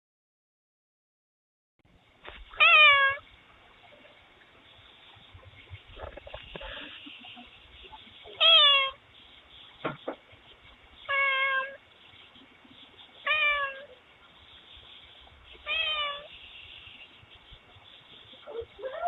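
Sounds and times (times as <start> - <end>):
cat meowing: 2.6 - 3.2, 8.4 - 9.0, 11.1 - 11.8, 13.2 - 14.0, 15.6 - 16.3.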